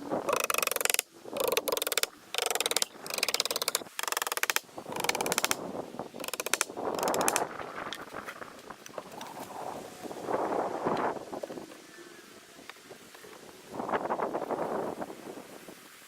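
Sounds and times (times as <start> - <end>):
ratchet wrench clicking: 0.3 - 5.6, 6.2 - 7.4.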